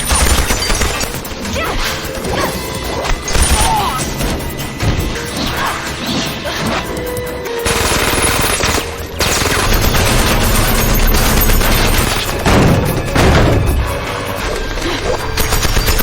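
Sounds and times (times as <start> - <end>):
automatic gunfire: 0.0 - 1.2, 7.6 - 12.8, 15.4 - 16.0
background music: 0.0 - 16.0.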